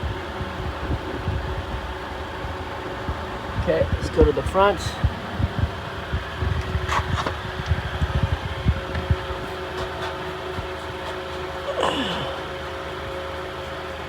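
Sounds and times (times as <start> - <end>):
low bumps: 0.0 - 10.9
car engine idling: 0.0 - 14.0.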